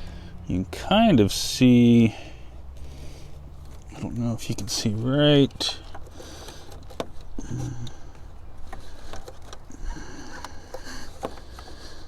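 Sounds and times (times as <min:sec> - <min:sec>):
man humming: 0:07.4 - 0:08.1.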